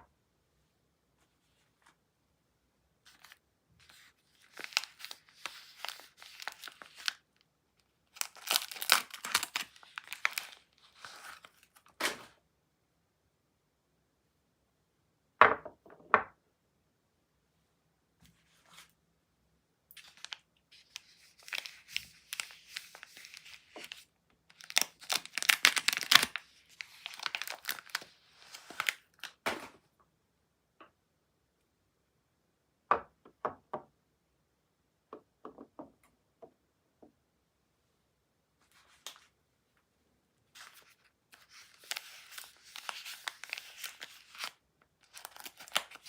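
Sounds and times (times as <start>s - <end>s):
packaging tearing and crinkling: 4.4s - 7.2s, 8.2s - 12.3s, 20.0s - 29.4s, 40.6s - 46.0s.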